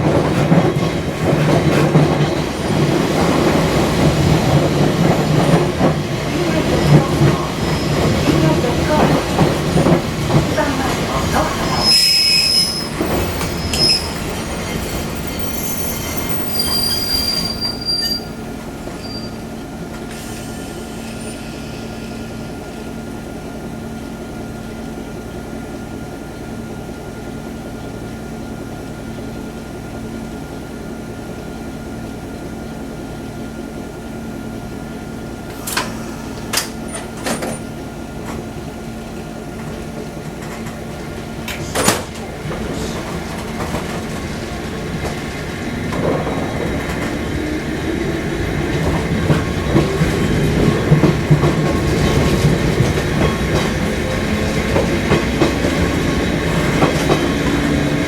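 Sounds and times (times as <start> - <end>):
train humming: 0.0 - 58.0
train wheels squealing: 6.8 - 8.2, 11.4 - 19.5, 20.1 - 22.3.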